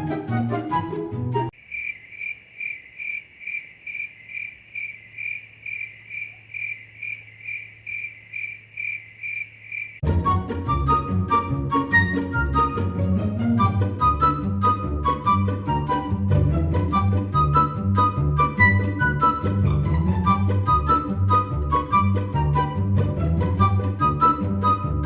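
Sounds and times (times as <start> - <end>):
music: 0.0 - 1.5, 10.0 - 25.0
high cricket-like chirping: 1.6 - 10.0.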